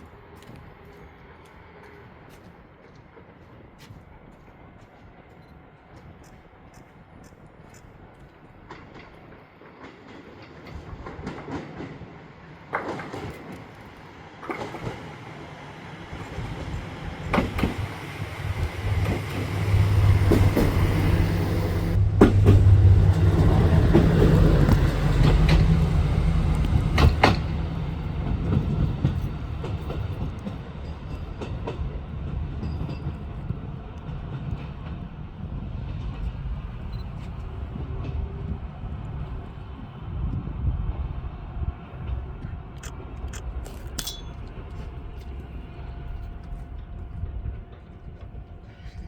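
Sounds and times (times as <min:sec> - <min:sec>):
wheels clacking over rail joints: 0:06.8 - 0:36.9
diesel engine passing: 0:17.9 - 0:29.7.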